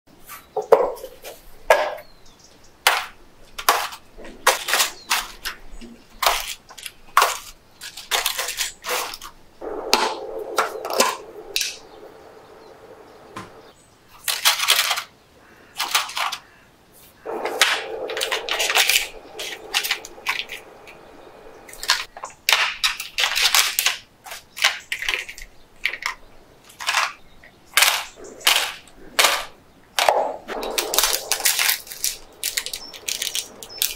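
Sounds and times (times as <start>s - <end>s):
plastic crackling rustles: 30.1s - 33.9s.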